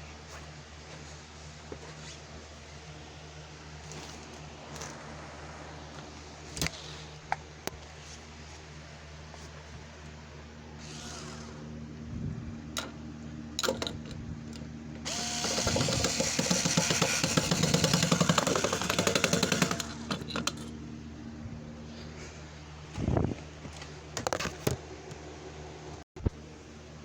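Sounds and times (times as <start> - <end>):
power drill rattling: 10.8 - 11.6, 15.0 - 20.6.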